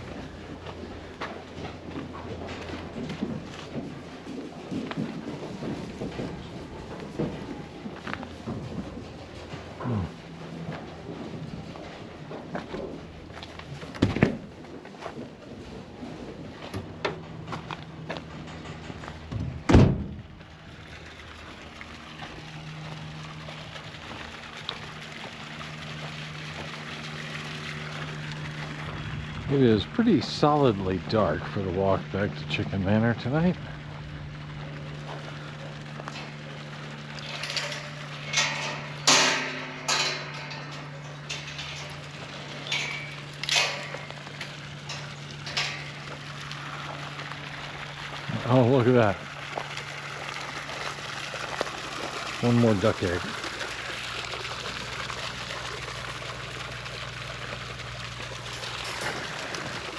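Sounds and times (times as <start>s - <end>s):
slow footsteps: 0.0s - 19.3s, 33.8s - 48.3s
low hum: 0.0s - 52.4s
barn door thudding shut: 18.5s - 20.2s, 37.2s - 46.2s.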